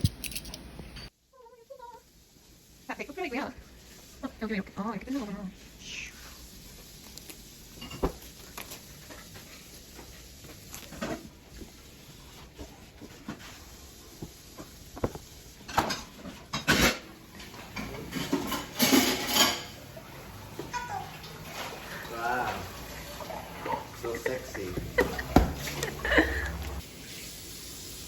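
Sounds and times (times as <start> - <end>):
paper and plastic crinkling: 7.0 - 13.7.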